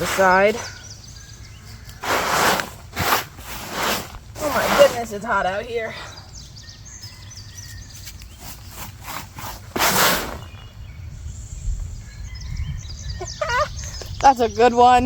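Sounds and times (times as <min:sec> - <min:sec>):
mulch and soil scraping: 0:00.0 - 0:06.2, 0:07.6 - 0:10.8
faint bird chirps: 0:04.9 - 0:08.8, 0:10.4 - 0:14.8.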